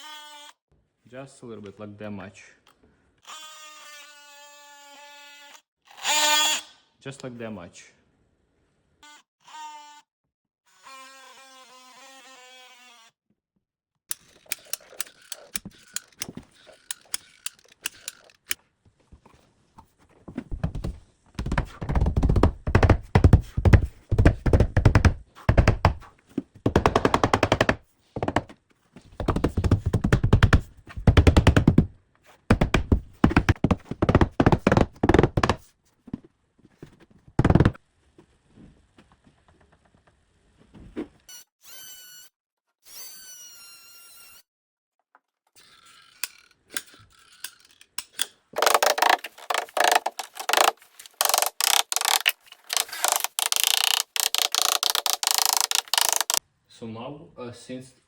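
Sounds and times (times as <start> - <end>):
nail gun rapid impacts: 26.7 - 28.5, 29.2 - 31.9, 32.5 - 35.6, 48.6 - 56.4.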